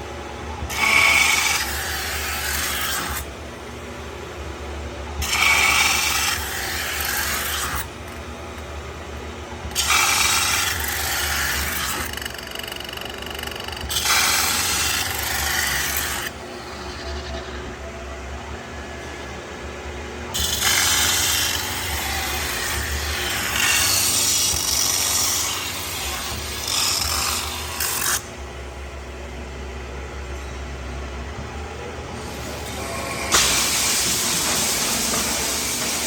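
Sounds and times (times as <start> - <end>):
steady machine hum: 0.0 - 36.0
lathe rasping on sheet metal: 32.2 - 36.0.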